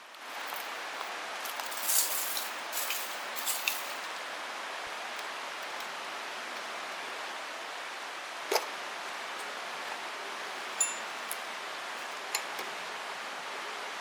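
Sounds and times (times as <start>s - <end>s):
steady hiss: 0.0s - 14.0s
flint scraping on steel: 1.5s - 4.1s.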